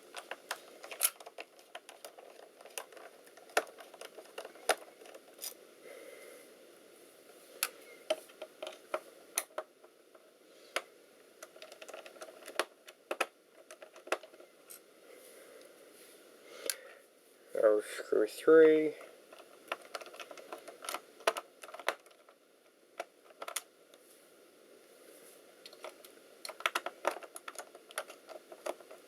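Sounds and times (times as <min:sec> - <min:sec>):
plastic parts handled: 0:00.0 - 0:05.6, 0:07.3 - 0:14.8, 0:19.0 - 0:23.7, 0:25.6 - 0:29.0
faint room hiss: 0:00.0 - 0:29.0.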